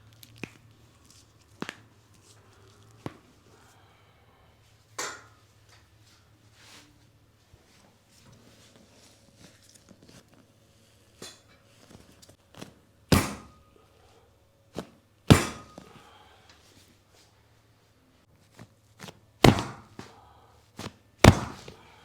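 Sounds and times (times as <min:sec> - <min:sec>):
sharp thuds of body adjustment: 0:14.8 - 0:15.8, 0:19.4 - 0:20.1, 0:20.8 - 0:21.8.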